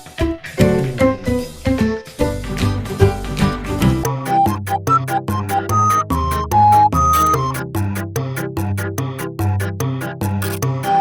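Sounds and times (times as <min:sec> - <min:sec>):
electronic music with fast beat: 0:03.9 - 0:11.0.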